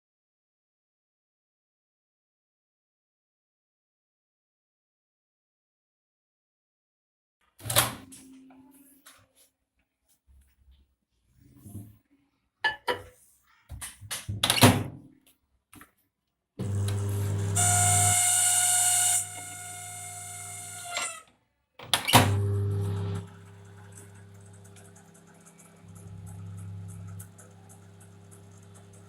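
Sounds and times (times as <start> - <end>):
microwave humming and whining: 16.6 - 21.2, 22.2 - 29.0.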